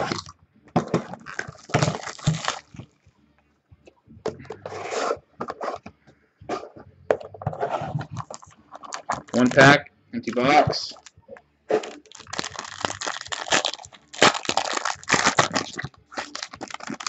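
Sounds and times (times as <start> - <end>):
cardboard and wrapper rustling: 0.8 - 2.8, 7.6 - 9.6, 11.8 - 17.0.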